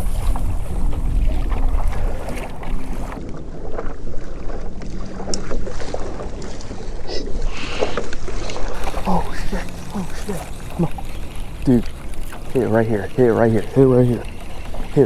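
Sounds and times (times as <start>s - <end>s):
wind buffeting microphone: 0.0s - 4.7s, 8.7s - 15.0s
water sloshing against hull: 0.0s - 15.0s.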